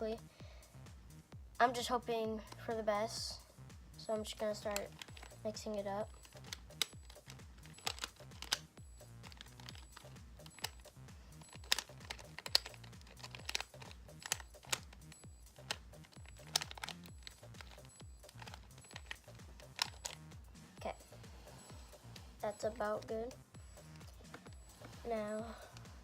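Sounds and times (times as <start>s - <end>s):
background music with bass: 0.0s - 26.0s
puzzle cube clicking: 4.4s - 20.4s, 23.8s - 26.0s.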